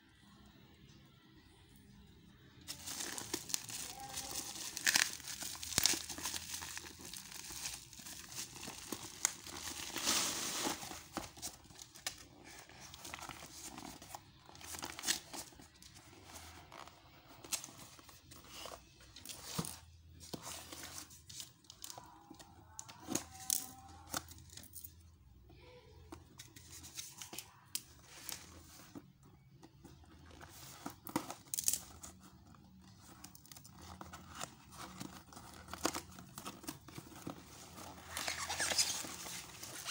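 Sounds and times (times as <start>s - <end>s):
packaging tearing and crumpling: 2.7s - 15.8s, 32.8s - 39.9s.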